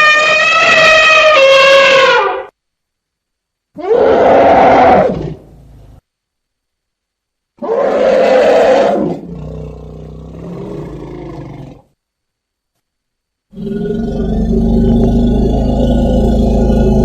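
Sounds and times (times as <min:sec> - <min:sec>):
baby elephant calling: 0:00.0 - 0:02.5.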